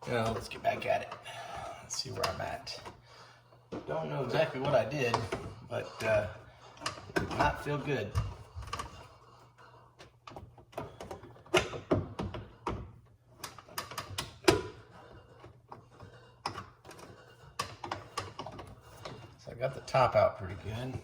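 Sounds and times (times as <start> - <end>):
tool clicking and knocking on plastic: 6.8 - 9.0, 10.0 - 14.8, 15.4 - 19.4.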